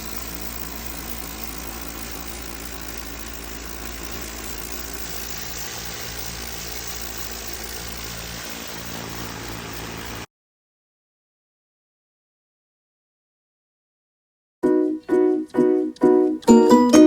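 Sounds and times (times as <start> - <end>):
hiss of spraying water: 0.0 - 10.3
pressure washer hum: 0.0 - 10.3.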